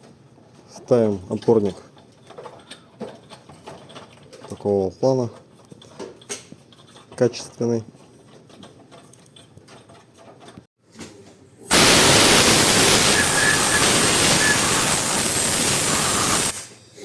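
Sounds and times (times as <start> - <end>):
faint workshop rustle: 0.0 - 11.7
high-pressure jet hissing: 11.7 - 16.6.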